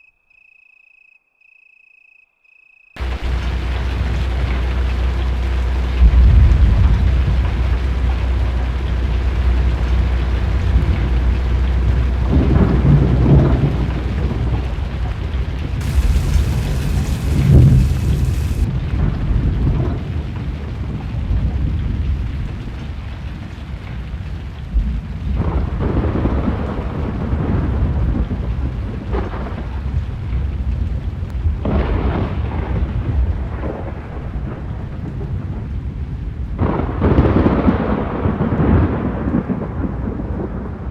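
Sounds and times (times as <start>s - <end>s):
thunder rolling: 3.0s - 22.6s, 36.6s - 40.9s
steady rain: 3.0s - 40.9s.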